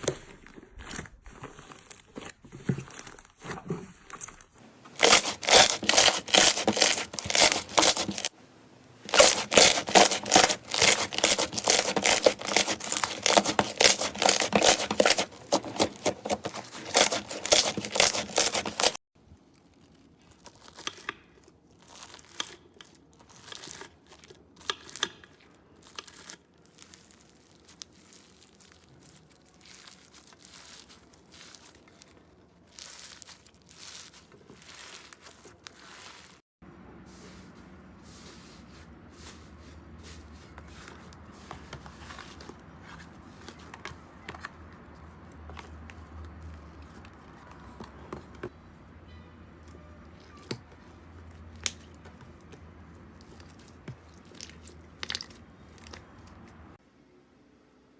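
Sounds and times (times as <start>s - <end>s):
slime crackling and tearing: 5.0s - 8.3s, 9.1s - 36.4s.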